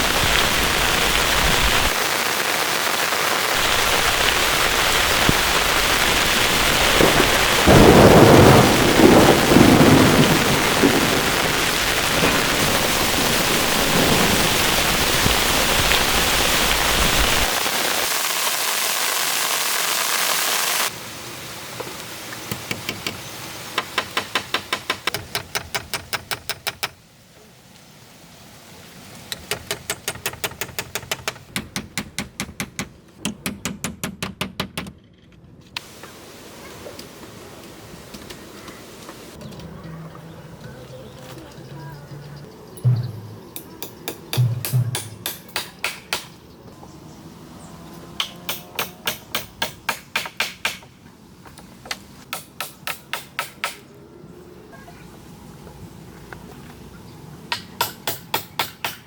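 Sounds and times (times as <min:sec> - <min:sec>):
heavy rain pouring: 0:00.0 - 0:24.2
thunder rumble: 0:03.5 - 0:17.6, 0:42.8 - 0:43.6.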